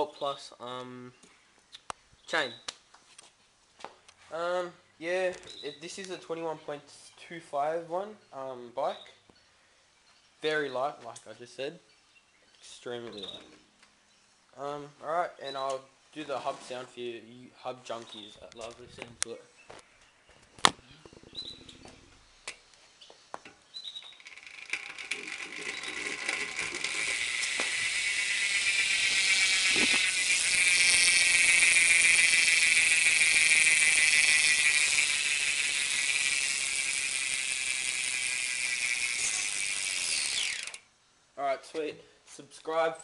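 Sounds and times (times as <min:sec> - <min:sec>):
bike hub ratcheting buzz: 0:23.9 - 0:40.9.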